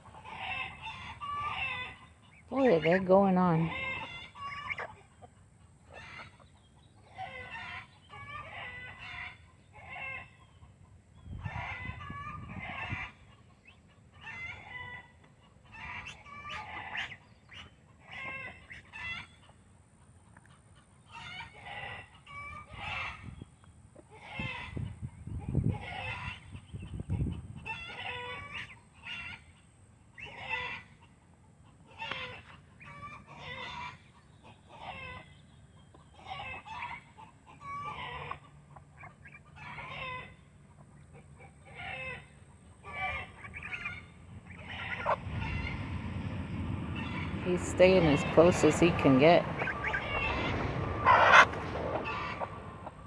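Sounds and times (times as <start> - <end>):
hens clucking: 0.0 - 23.3, 25.7 - 35.2, 35.8 - 53.0
roosters crowing: 41.7 - 53.0.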